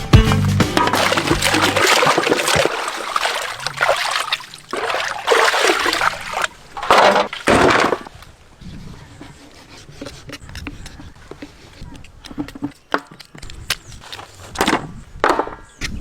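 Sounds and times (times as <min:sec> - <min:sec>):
background music: 0:00.0 - 0:02.0
liquid trickling and splashing: 0:00.8 - 0:08.1.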